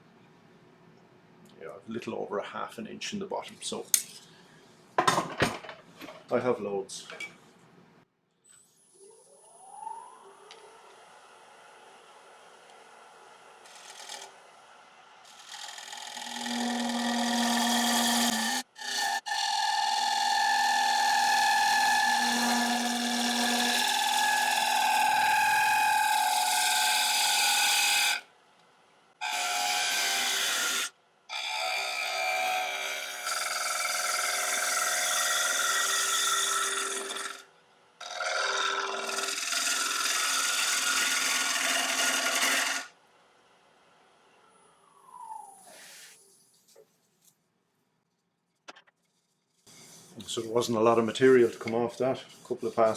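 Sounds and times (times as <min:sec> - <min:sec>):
lathe tool cutting wood bowl: 0:12.8 - 0:28.2, 0:29.2 - 0:37.4, 0:38.0 - 0:42.9.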